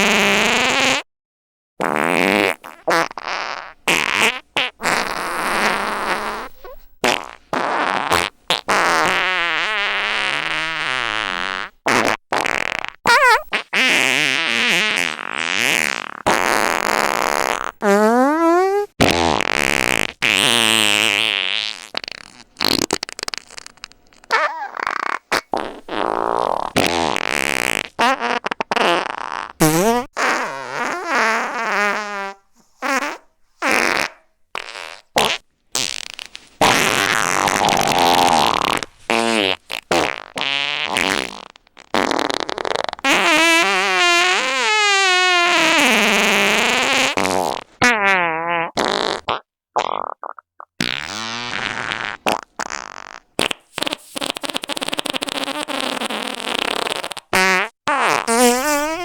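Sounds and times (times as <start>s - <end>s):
fart sound effects: 0.0s - 1.1s, 1.8s - 59.0s.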